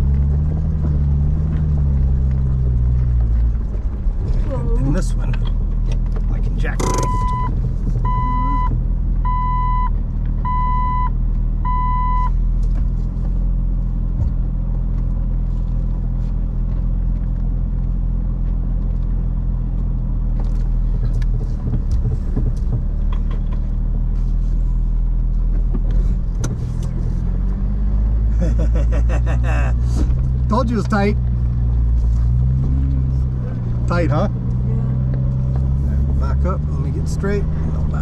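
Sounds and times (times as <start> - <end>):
vehicle engine low hum: 0.0 - 38.0
electronic warning chime beeps: 8.1 - 8.7.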